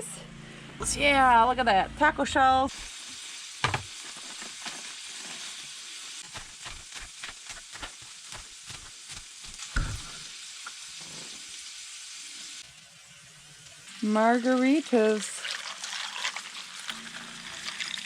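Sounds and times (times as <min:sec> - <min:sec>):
food frying and sizzling: 0:02.7 - 0:18.0
loud knock: 0:03.6 - 0:03.9.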